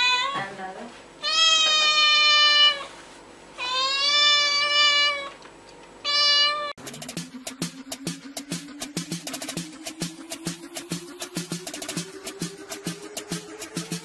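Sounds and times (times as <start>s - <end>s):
cat meowing: 1.2s - 2.9s, 3.6s - 5.4s, 6.0s - 6.7s
music with percussive beat: 6.8s - 14.0s.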